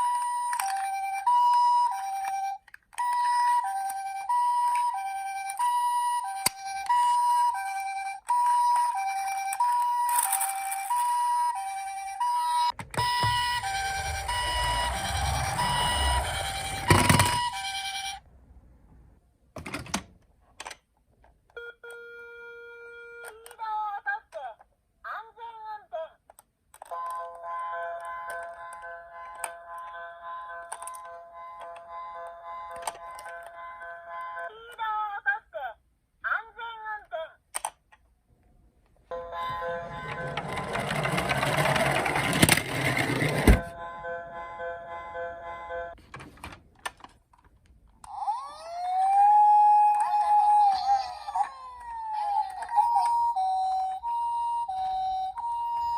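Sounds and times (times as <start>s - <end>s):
toy siren two-tone: 0.0s - 18.2s, 21.6s - 23.4s, 48.1s - 55.9s.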